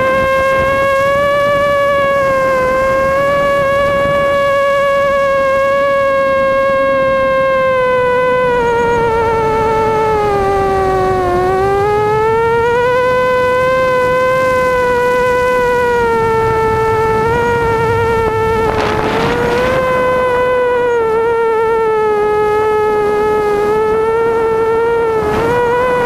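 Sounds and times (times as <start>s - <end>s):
quadcopter motors whining: 0.0s - 26.0s.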